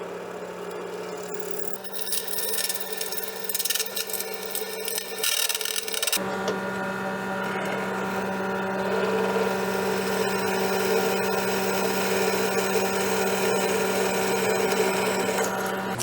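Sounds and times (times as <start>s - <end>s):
electric power tool motor running: 0.8s - 16.0s.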